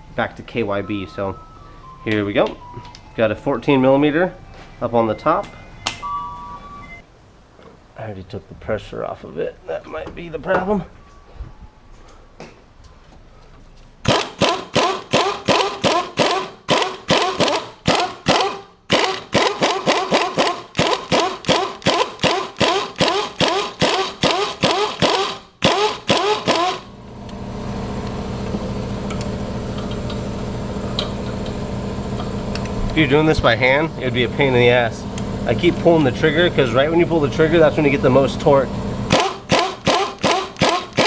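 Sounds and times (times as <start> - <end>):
steady mechanical hum: 0.0 - 41.0
impact gun bursts: 14.0 - 26.9, 39.1 - 41.0.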